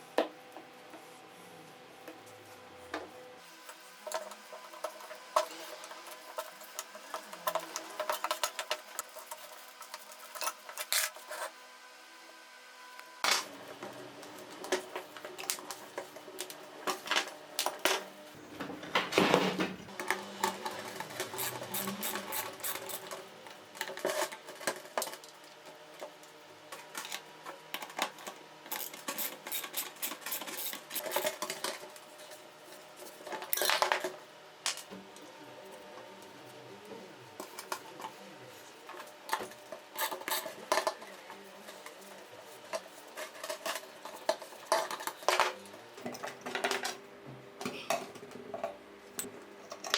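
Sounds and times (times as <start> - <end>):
metallic clinks and scrapes: 4.2 - 11.6, 20.4 - 23.2, 28.7 - 31.8.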